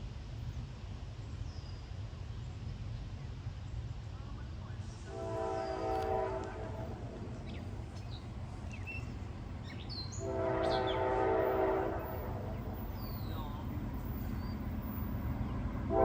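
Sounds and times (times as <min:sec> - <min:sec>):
locomotive air horn: 0:05.1 - 0:07.0, 0:10.1 - 0:12.7.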